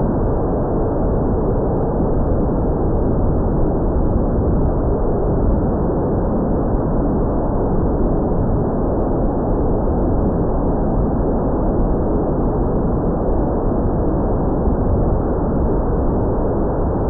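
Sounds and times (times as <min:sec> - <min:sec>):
wind noise on microphone: 0:00.0 - 0:17.0.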